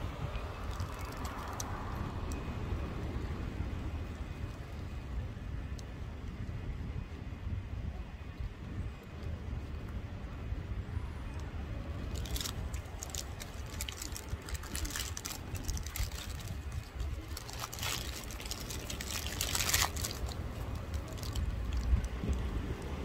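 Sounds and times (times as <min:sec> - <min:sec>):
wind rumbling on microphone: 0:00.0 - 0:23.0
sharp crackling: 0:12.1 - 0:23.0.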